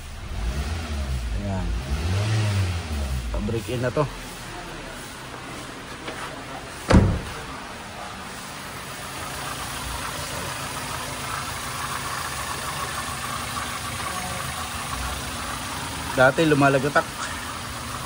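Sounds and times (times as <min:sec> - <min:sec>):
car engine idling: 0:00.0 - 0:18.0
sharp thump: 0:06.9 - 0:07.5.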